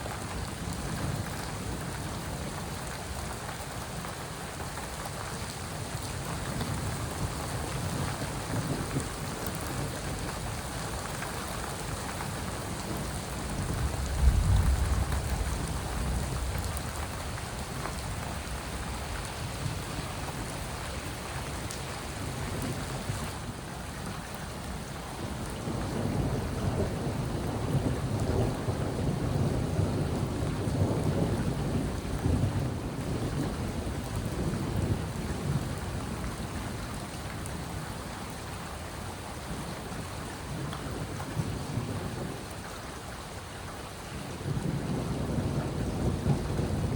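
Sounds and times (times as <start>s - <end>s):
steady rain: 0.0s - 46.9s
thunder rumbling: 11.8s - 21.6s, 44.5s - 46.9s.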